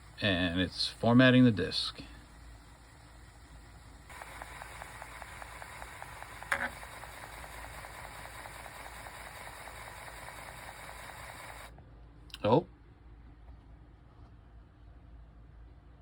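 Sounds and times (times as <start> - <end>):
floppy drive motor running: 0.0 - 11.7
loud floppy drive click: 4.1 - 9.6.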